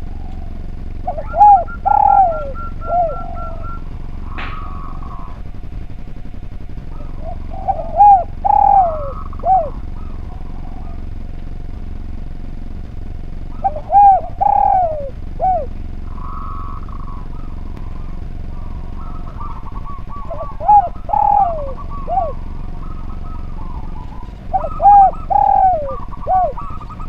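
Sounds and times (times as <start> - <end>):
dove cooing: 0.0 - 11.3, 13.4 - 27.0.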